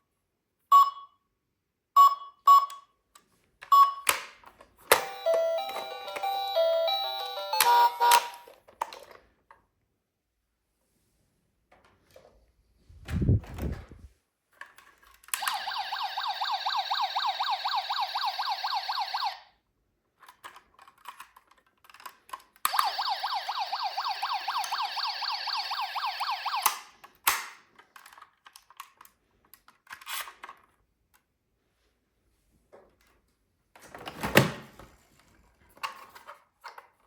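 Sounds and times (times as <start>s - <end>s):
toy electronic siren warbling: 5.0s - 8.5s, 15.4s - 19.5s, 22.7s - 26.8s.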